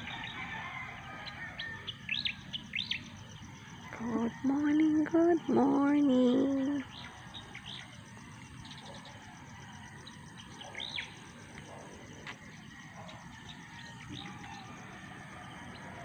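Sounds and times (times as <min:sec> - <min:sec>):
high insect trill: 0:00.0 - 0:16.0
bird chirps: 0:01.8 - 0:03.2, 0:10.4 - 0:11.2.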